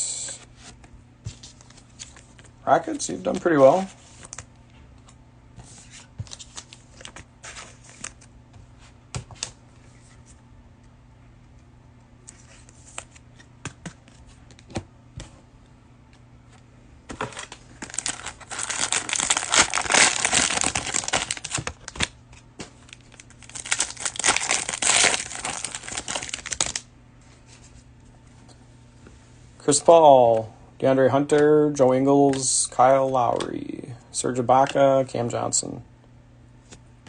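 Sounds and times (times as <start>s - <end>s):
cellophane wrapper crinkling: 17.2s - 26.9s.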